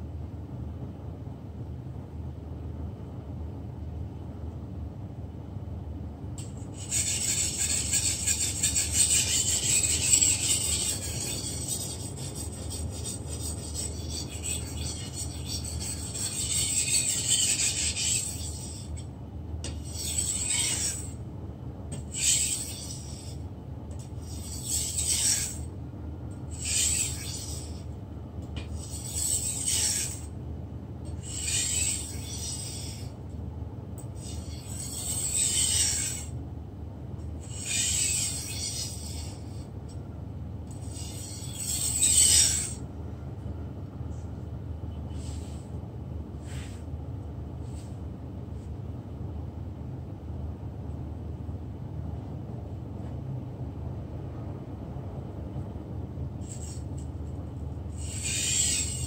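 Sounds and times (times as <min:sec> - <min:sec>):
low steady hum: 0:00.0 - 0:59.0
knife scraping on whetstone: 0:06.4 - 0:19.1, 0:19.7 - 0:21.2, 0:21.9 - 0:23.4, 0:24.0 - 0:25.7, 0:26.5 - 0:27.9, 0:28.6 - 0:30.3, 0:31.1 - 0:33.2, 0:34.0 - 0:36.3, 0:37.4 - 0:39.6, 0:40.7 - 0:42.8, 0:58.0 - 0:59.0.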